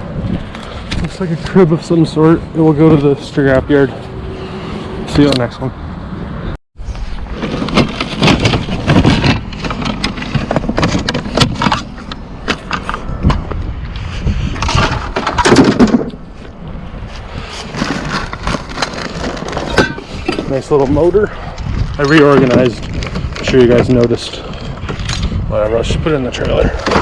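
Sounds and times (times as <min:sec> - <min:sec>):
rustling: 0:14.0 - 0:20.6
hard objects clattering and knocking: 0:14.6 - 0:16.2, 0:17.6 - 0:20.6.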